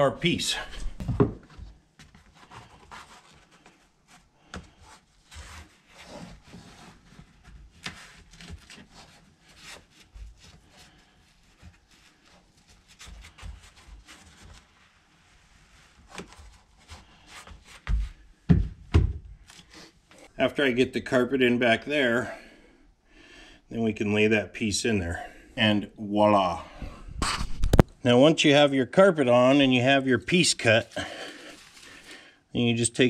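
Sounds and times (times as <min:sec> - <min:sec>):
rubbing and scraping by hand: 0:02.0 - 0:18.4, 0:26.3 - 0:27.8, 0:29.2 - 0:32.3.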